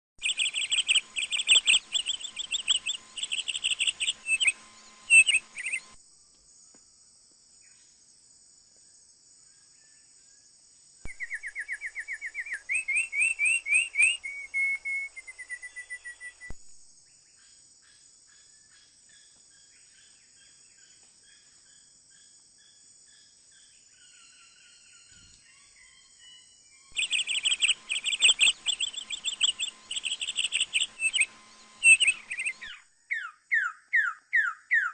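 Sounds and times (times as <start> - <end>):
bird chirping and trilling: 0.2 - 6.0, 11.1 - 16.5, 24.0 - 34.9
faint high-pitched drone: 0.2 - 6.0, 27.0 - 32.8.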